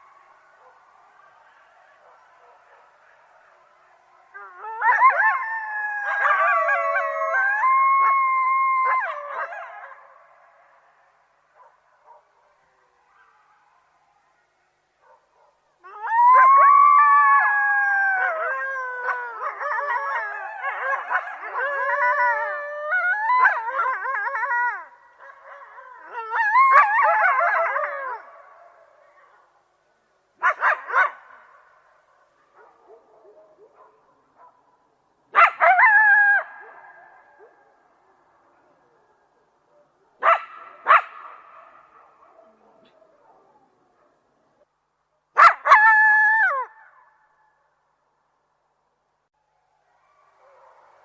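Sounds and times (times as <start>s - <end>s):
coyotes howling and yipping: 0.0s - 29.5s, 35.3s - 44.2s, 49.8s - 51.0s.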